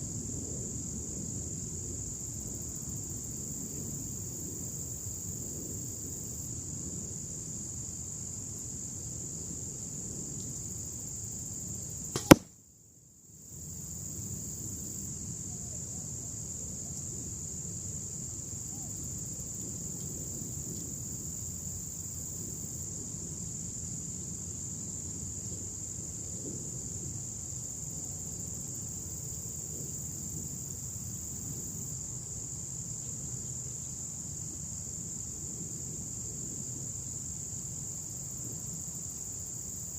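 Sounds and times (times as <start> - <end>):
crickets trilling: 0.0 - 12.4, 13.3 - 39.9
arrow hitting target: 12.2 - 12.4.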